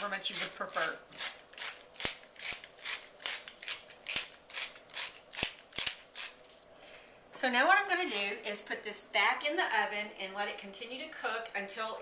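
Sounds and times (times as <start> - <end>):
pepper mill grinding: 0.0 - 6.6.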